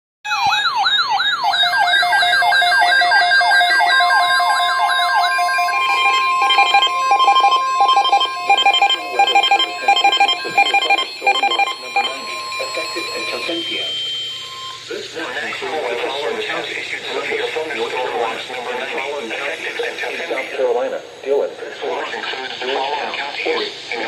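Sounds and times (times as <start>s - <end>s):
electronic siren wailing: 0.3s - 15.0s
rapid electronic beeping: 0.3s - 21.2s
steady high alert tone: 0.3s - 21.2s.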